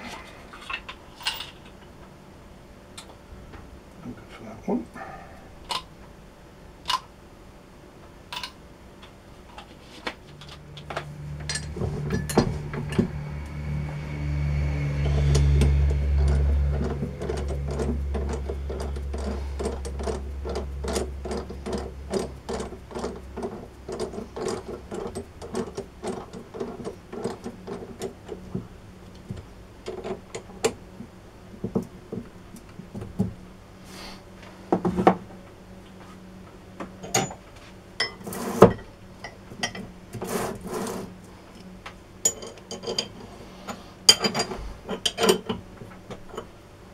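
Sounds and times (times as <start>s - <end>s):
metal lathe humming: 10.8s - 27.3s.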